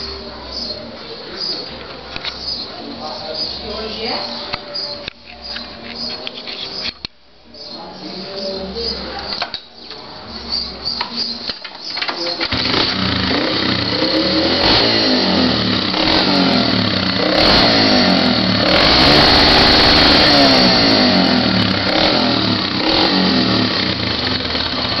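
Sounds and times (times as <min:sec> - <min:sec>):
engine revving: 0:12.5 - 0:25.0.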